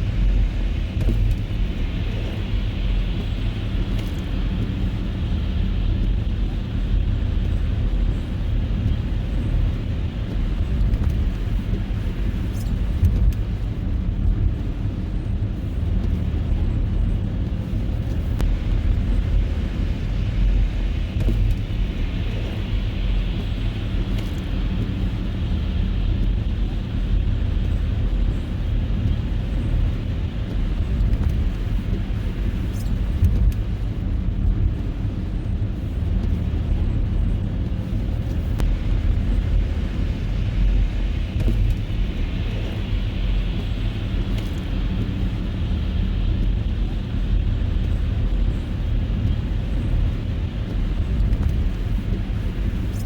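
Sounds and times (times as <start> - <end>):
car engine and tyre rumble: 0.0 - 53.0.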